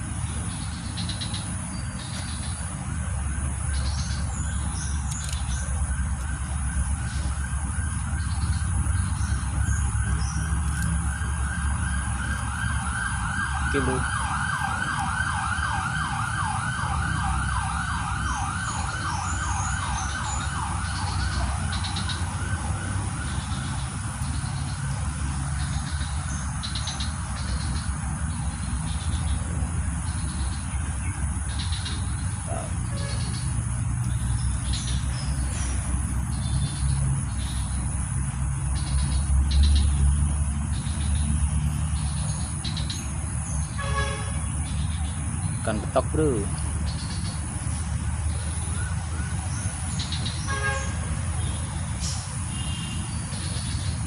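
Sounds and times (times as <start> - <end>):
insect chirps: 0.0 - 54.0
low traffic rumble: 0.0 - 54.0
siren yelping: 3.0 - 24.9
high insect buzz: 50.0 - 53.9.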